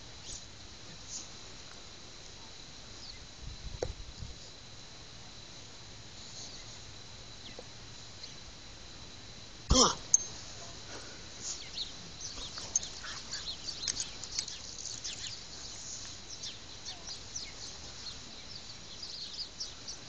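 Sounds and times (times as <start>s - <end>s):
small birds chirping: 6.3s - 8.5s, 10.0s - 20.0s.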